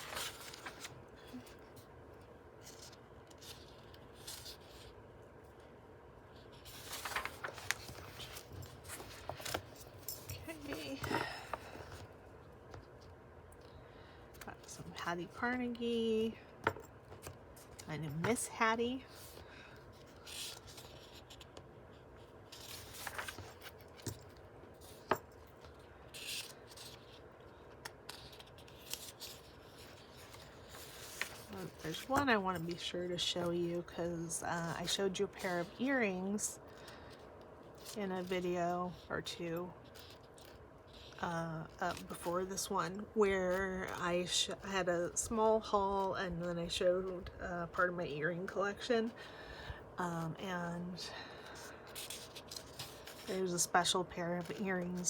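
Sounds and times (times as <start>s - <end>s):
book pages rustling: 0.0s - 5.0s, 6.3s - 13.7s, 17.0s - 32.8s, 51.4s - 55.0s.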